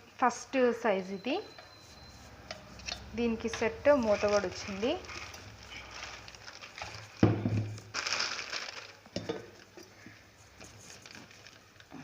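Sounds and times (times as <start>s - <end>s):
plastic rustle: 3.6s - 12.0s.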